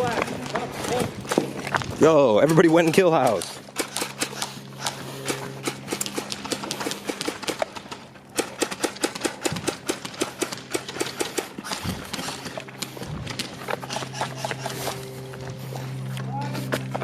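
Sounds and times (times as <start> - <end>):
steady low hum: 0.0 - 17.0
airsoft guns firing: 2.8 - 14.8.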